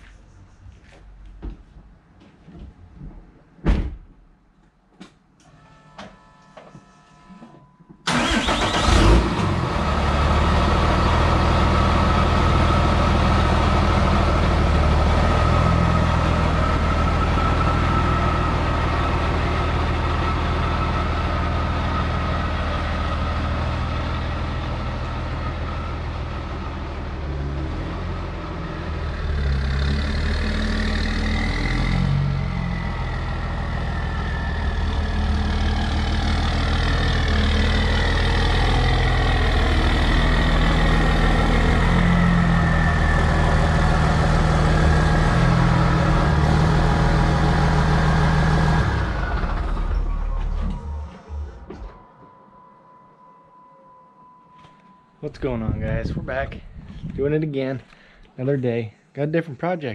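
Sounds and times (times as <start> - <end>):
diesel engine starting and idling: 8.0 - 53.6.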